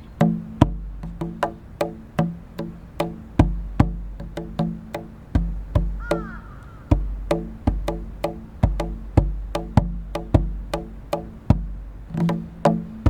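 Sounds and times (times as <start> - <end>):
goblet drum rhythm: 0.0 - 13.0
crow cawing: 6.0 - 7.2.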